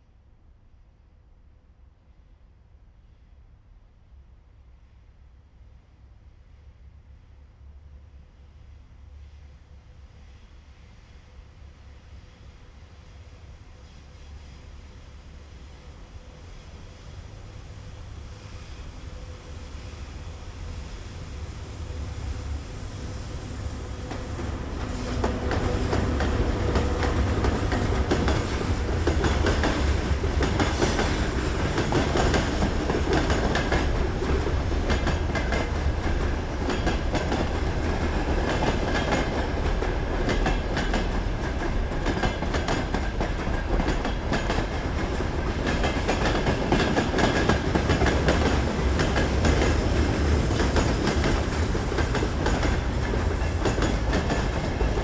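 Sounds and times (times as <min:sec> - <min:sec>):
train wheels rumbling on rails: 0:08.4 - 0:55.0
wheels clacking over rail joints: 0:23.7 - 0:55.0.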